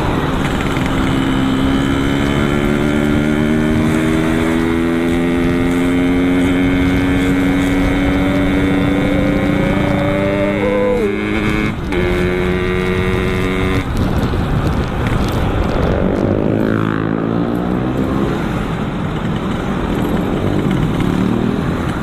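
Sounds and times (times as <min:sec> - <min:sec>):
motorcycle engine running: 0:00.0 - 0:17.2
wind and road noise: 0:00.0 - 0:22.0.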